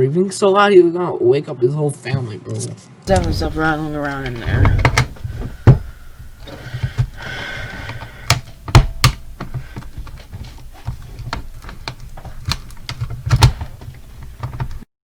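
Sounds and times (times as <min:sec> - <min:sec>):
heavy breathing into microphone: 0:03.1 - 0:14.8
loose parts rattling: 0:03.1 - 0:15.0
plastic clicks and knocks: 0:03.1 - 0:15.0.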